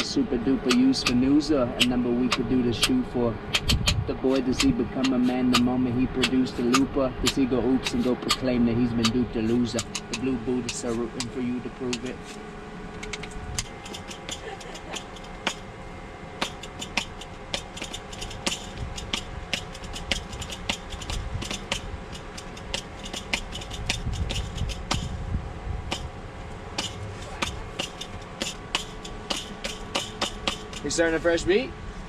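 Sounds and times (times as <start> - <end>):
rapid irregular clicking: 0.0 - 12.2, 12.9 - 15.7, 16.4 - 25.2, 25.9 - 31.2
steady hum: 0.0 - 32.0.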